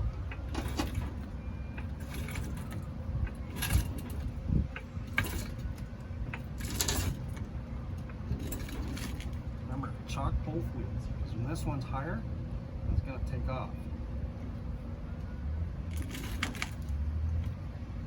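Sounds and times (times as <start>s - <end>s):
low outdoor rumble: 0.0s - 18.0s.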